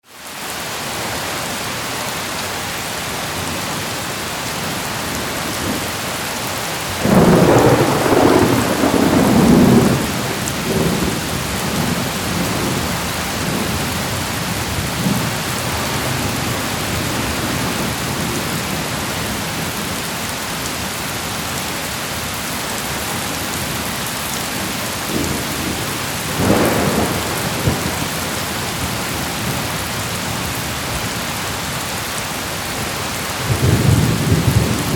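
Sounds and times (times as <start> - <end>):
heavy rain: 0.0 - 34.9
thunder rumbling: 6.8 - 18.9, 24.6 - 31.0, 33.4 - 34.9.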